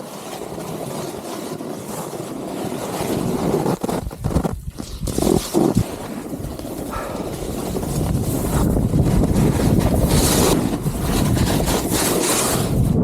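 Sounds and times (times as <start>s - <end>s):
skis scraping over snow: 0.0s - 13.0s
wind rushing over microphone: 4.0s - 13.0s.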